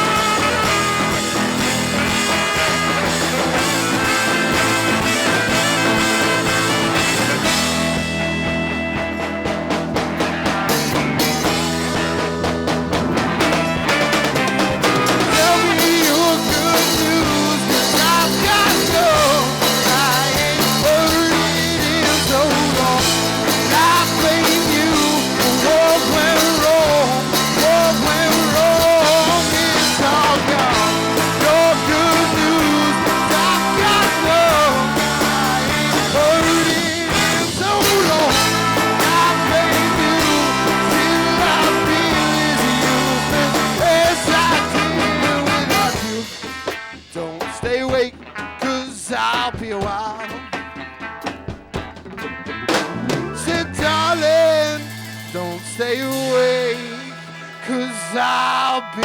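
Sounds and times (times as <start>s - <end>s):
wavering lead melody: 0.0s - 46.0s
rock band playing: 0.0s - 59.0s.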